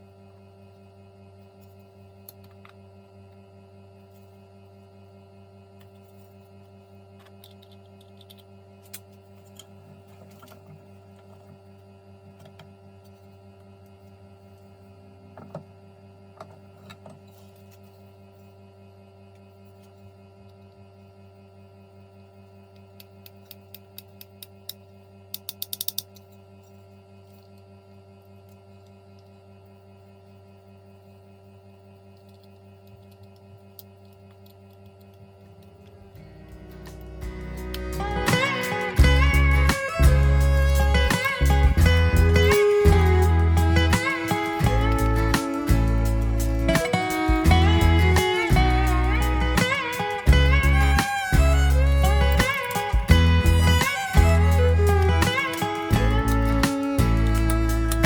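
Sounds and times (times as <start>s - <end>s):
low electrical hum: 0.0s - 58.0s
small clicks: 23.0s - 26.2s.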